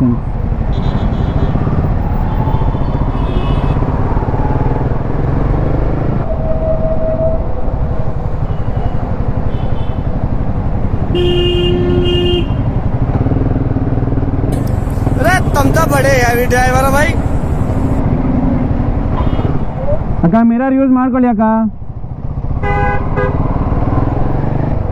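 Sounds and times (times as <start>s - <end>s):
motorcycle engine rumble: 0.0s - 20.4s
vehicle horns honking: 0.6s - 1.7s, 2.3s - 4.0s, 8.1s - 10.3s, 10.9s - 13.0s, 19.0s - 19.9s, 22.6s - 23.4s.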